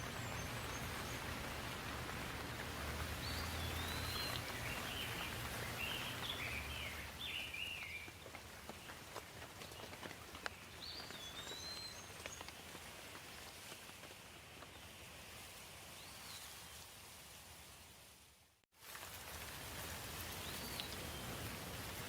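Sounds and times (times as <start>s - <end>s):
songbird chirping: 0.0s - 12.8s
light rain falling: 0.0s - 22.0s.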